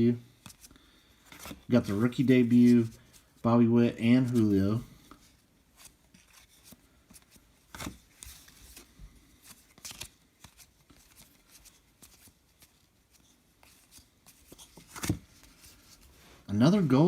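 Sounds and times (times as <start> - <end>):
trading cards clicking and rustling: 5.8 - 15.8.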